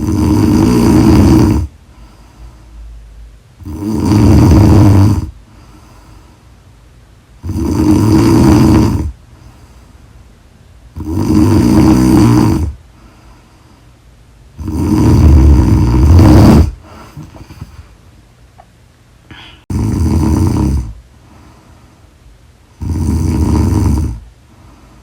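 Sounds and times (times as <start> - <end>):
woman snoring loudly: 0.0 - 1.7, 3.6 - 5.4, 7.4 - 9.2, 11.0 - 12.8, 14.6 - 17.6, 19.3 - 21.0, 22.8 - 24.2.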